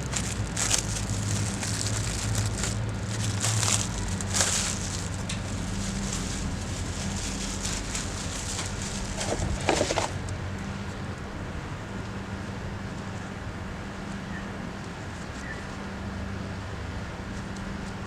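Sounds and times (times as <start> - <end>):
crackles and clicks: 0.0 - 10.1.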